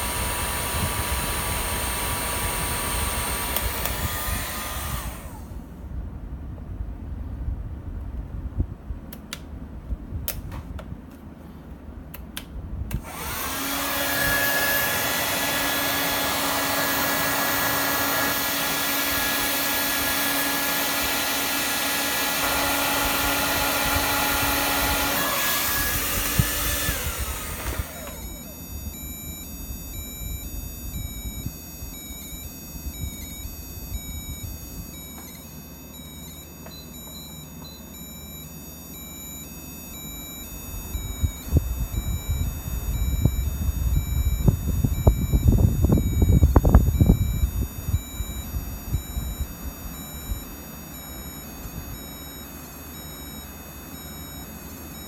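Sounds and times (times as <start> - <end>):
hair dryer running: 0.0 - 5.7, 12.9 - 29.2
electronic buzzer beeping: 13.1 - 55.0.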